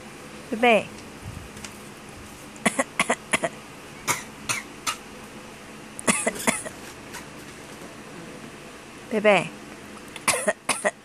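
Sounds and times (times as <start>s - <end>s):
short coughs: 2.7s - 5.0s, 6.1s - 6.8s, 10.3s - 11.0s.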